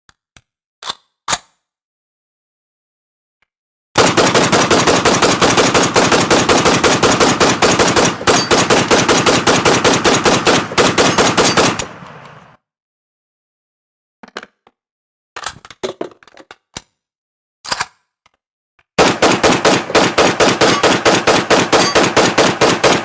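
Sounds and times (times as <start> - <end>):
automatic gunfire: 4.0 - 12.5, 19.0 - 23.0.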